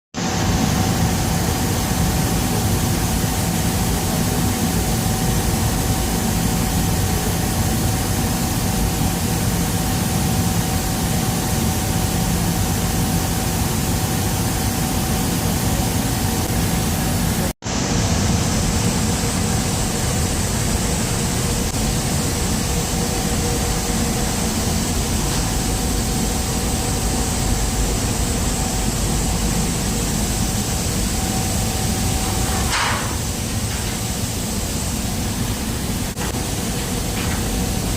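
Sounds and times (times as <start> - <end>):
welding arc hissing: 14.1 - 37.9.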